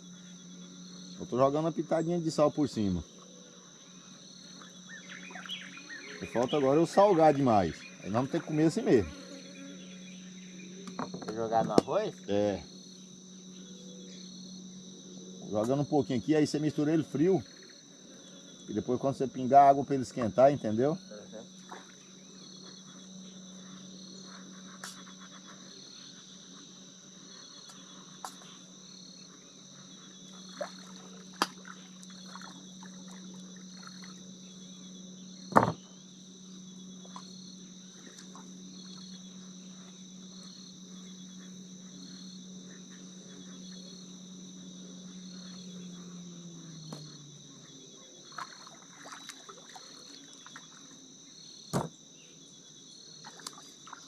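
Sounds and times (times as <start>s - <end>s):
crickets trilling: 0.0s - 54.0s
low steady hum: 0.0s - 54.0s
sharp knocks: 35.5s - 35.8s, 51.7s - 51.9s.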